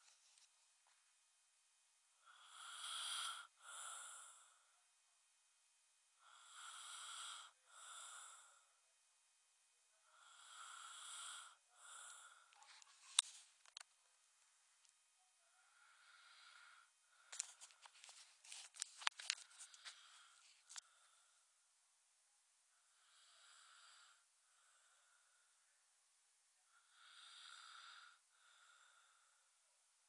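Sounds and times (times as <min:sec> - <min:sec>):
person snoring: 0:02.2 - 0:04.6, 0:06.2 - 0:08.7, 0:10.0 - 0:12.6, 0:15.6 - 0:16.9, 0:22.9 - 0:25.3, 0:26.7 - 0:29.4.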